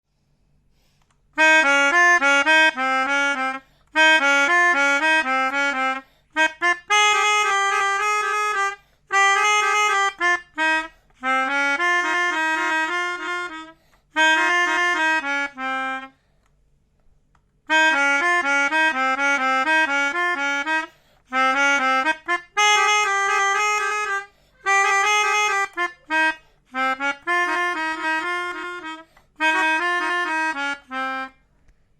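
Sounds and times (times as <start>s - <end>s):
multi-tone bus horn warbling tune: 1.4s - 16.1s.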